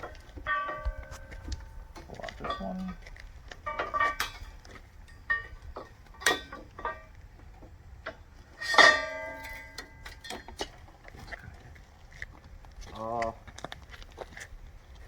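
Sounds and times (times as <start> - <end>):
metal parts clanking: 0.0 - 7.2, 8.6 - 11.4.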